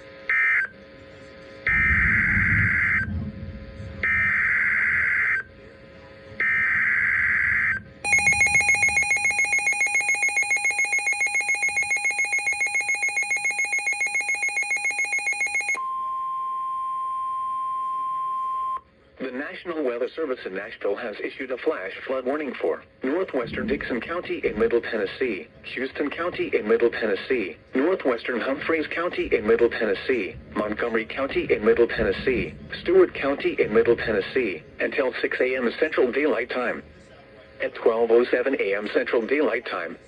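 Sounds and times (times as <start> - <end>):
steady single tone: 6.4 - 10.6
buzzy digital data bursts: 6.4 - 15.8
pulsing alert tone: 7.6 - 15.8.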